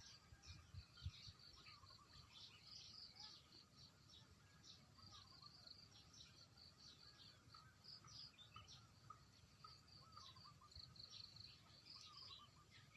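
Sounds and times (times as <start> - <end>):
small birds chirping: 0.0 - 12.9.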